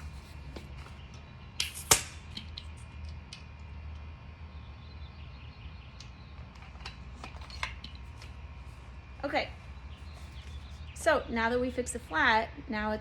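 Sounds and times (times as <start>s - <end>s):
sharp snap with hiss: 1.6s - 2.6s.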